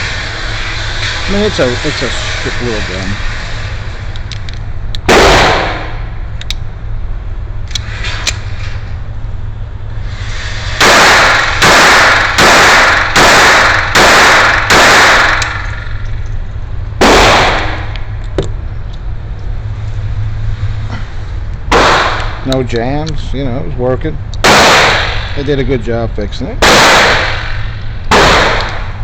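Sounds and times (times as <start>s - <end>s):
pistol shots: 5.1s - 6.0s, 10.8s - 15.8s, 17.0s - 17.9s, 21.7s - 22.4s, 24.4s - 25.4s, 26.6s - 28.9s.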